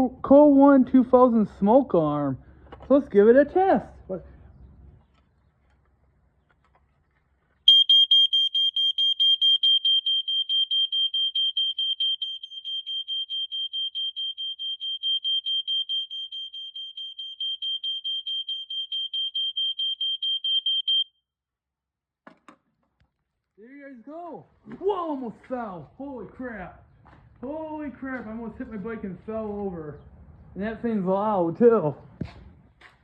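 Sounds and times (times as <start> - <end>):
smoke alarm rapid piercing beeps: 7.7 - 21.1.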